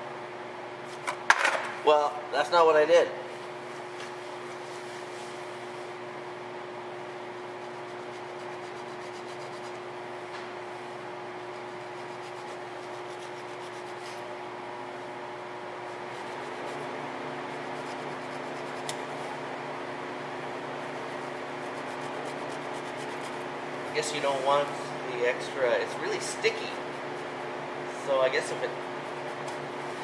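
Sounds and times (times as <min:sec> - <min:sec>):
steady hum: 0:00.0 - 0:30.0
blade scraping rubber strip: 0:11.6 - 0:14.3, 0:21.0 - 0:23.4.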